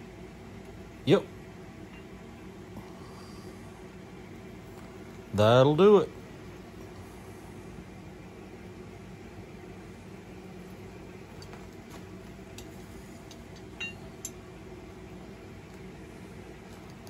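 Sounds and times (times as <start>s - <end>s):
machinery humming: 0.0s - 17.0s
light metallic clicks and clinks: 12.5s - 14.4s.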